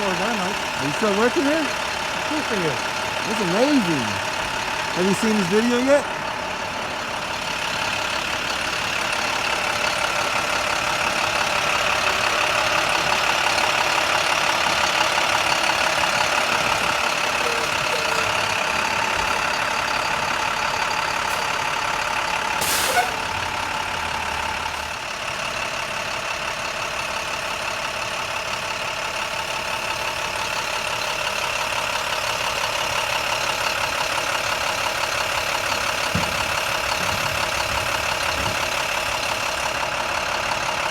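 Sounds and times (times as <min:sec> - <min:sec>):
short sharp hiss: 0:22.6 - 0:23.1.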